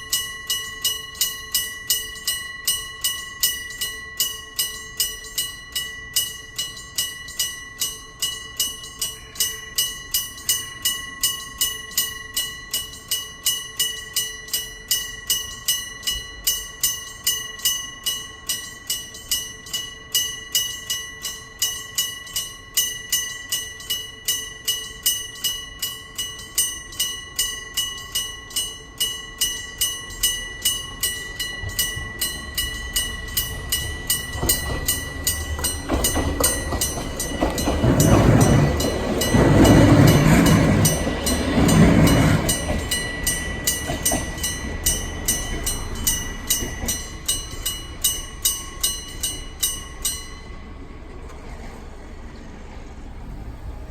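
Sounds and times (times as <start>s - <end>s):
level crossing bell ringing: 0.0s - 50.9s
train rumble: 26.4s - 53.9s.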